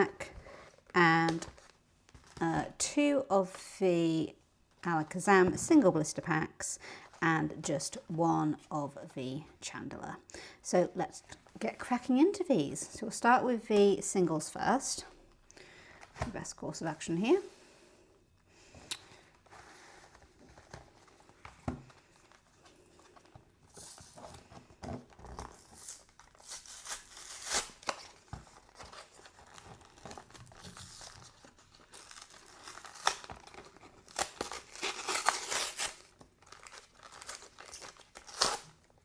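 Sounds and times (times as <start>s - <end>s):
cardboard tearing: 25.2s - 38.9s.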